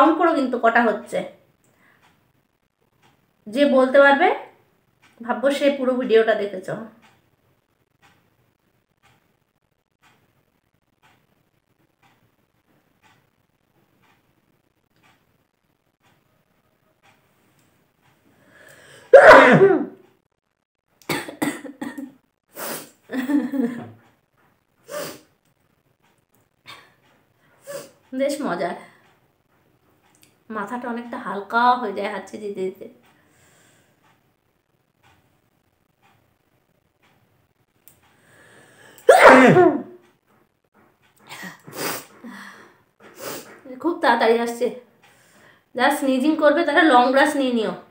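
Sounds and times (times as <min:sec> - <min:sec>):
intake of breath: 0:18.3 - 0:19.1, 0:33.2 - 0:34.0, 0:38.1 - 0:39.0, 0:41.4 - 0:43.5, 0:45.1 - 0:45.7
woman sneezing: 0:19.1 - 0:19.9, 0:39.0 - 0:39.9.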